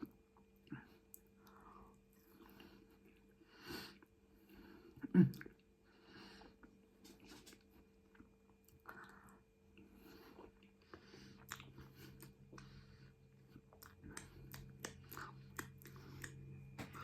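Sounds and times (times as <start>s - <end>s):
low steady hum: 0.0s - 17.0s
wet chewing mouth clicks: 11.4s - 12.7s, 13.7s - 16.4s.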